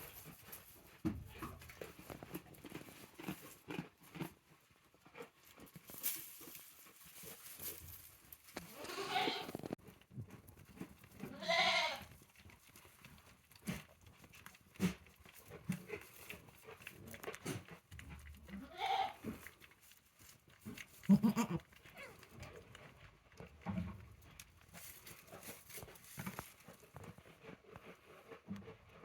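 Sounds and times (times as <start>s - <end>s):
rustling: 5.2s - 18.5s, 19.1s - 28.4s
goats bleating: 8.7s - 9.6s, 11.3s - 12.1s, 18.6s - 19.2s, 21.1s - 21.7s.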